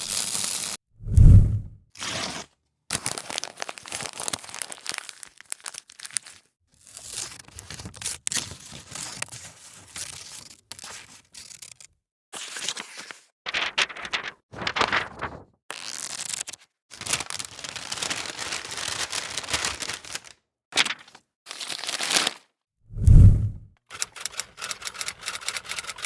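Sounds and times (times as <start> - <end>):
crackly tearing and crinkling: 2.9 - 8.3, 13.5 - 22.5.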